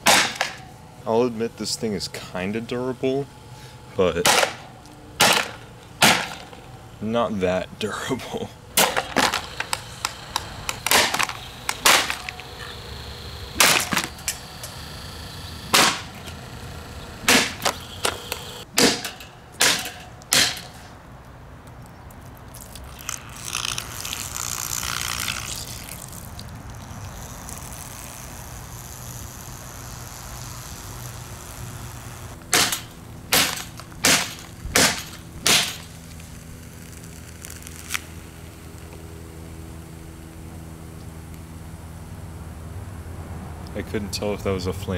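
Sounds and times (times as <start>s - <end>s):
fan being smashed: 0.0s - 0.7s, 4.2s - 6.7s, 8.8s - 9.8s, 10.7s - 12.4s, 13.6s - 14.4s, 15.7s - 16.2s, 17.3s - 20.8s, 32.4s - 36.0s
fan motor humming: 0.0s - 20.7s, 22.8s - 44.9s.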